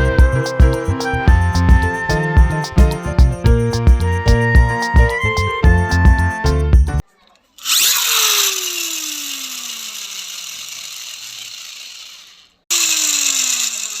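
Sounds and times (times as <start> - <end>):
toy mechanism whirring: 7.5 - 14.0.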